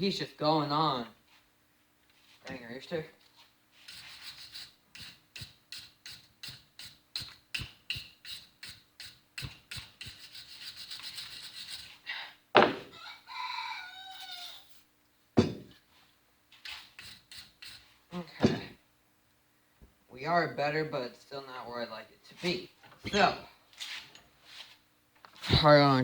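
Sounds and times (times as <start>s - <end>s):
wire brush scrubbing metal: 3.8s - 12.0s, 16.8s - 17.9s
loud knock: 12.6s - 12.9s, 15.4s - 15.8s
rooster crowing: 12.8s - 14.8s.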